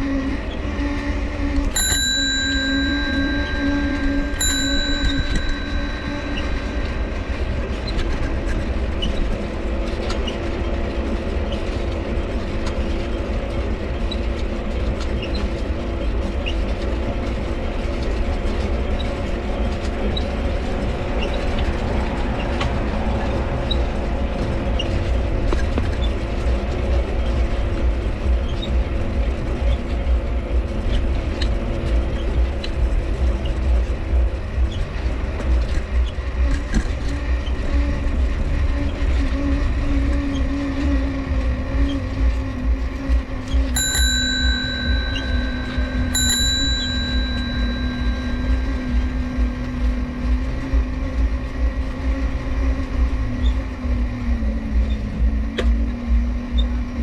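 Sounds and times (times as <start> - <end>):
bike dynamo humming: 0.0 - 12.2, 34.5 - 57.0
rolling bike rumble and rattle: 0.0 - 57.0
pedal cranks squeaking: 0.6 - 13.3, 18.9 - 22.6, 28.4 - 28.8, 34.6 - 50.6.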